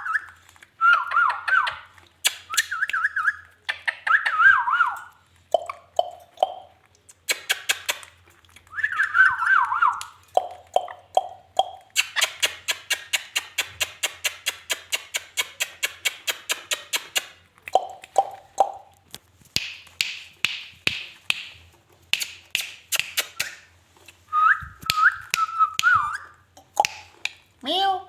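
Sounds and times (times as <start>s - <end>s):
parrot clicking rapidly: 10.0s - 21.5s, 24.8s - 27.4s.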